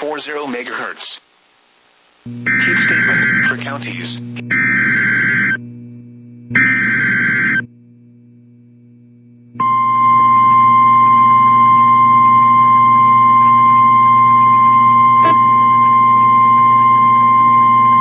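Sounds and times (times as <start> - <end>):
buzzy digital data tones: 2.3 - 7.8
low hum: 2.3 - 18.0
high-pitched alarm tone: 2.4 - 3.7, 4.5 - 5.6, 6.6 - 7.6, 9.6 - 18.0.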